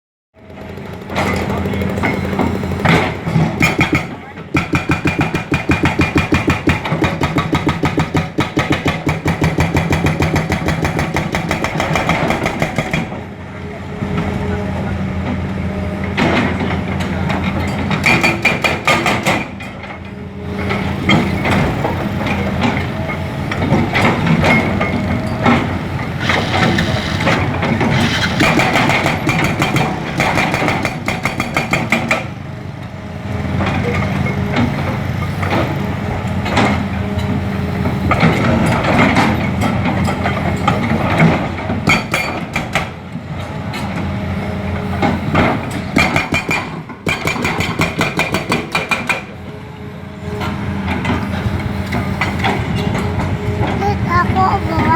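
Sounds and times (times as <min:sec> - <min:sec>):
hydraulic breaker hammering asphalt: 0:00.4 - 0:13.3, 0:16.2 - 0:19.9, 0:20.6 - 0:43.9, 0:44.8 - 0:49.4
excavator engine running: 0:00.4 - 0:41.8.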